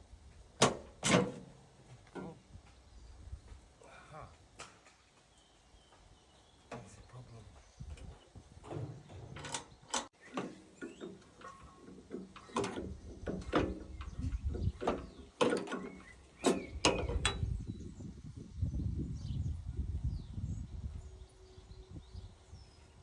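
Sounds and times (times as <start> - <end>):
metal parts clicking and clunking: 8.6 - 17.5.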